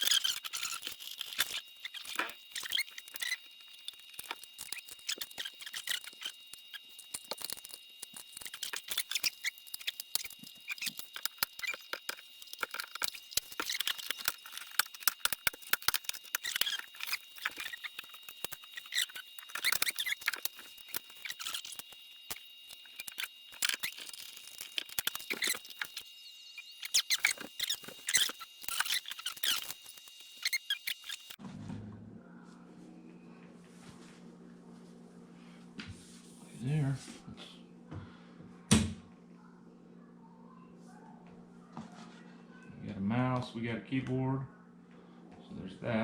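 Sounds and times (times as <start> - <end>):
plastic parts clicking and scraping: 0.0 - 31.4.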